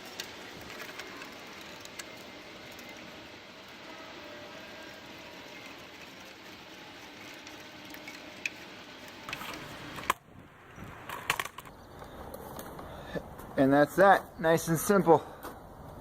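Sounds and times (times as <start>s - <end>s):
cable clicks and rustling: 0.0s - 3.8s, 5.0s - 12.9s.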